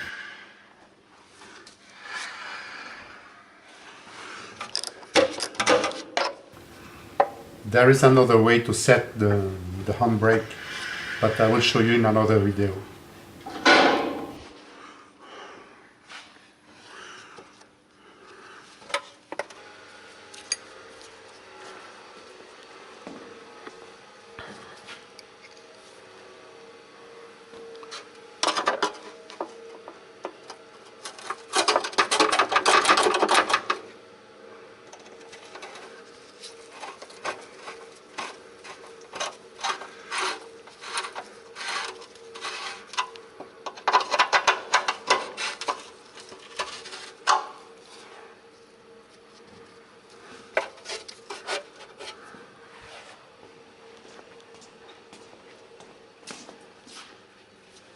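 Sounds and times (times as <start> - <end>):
faint hum: 6.6 - 16.0.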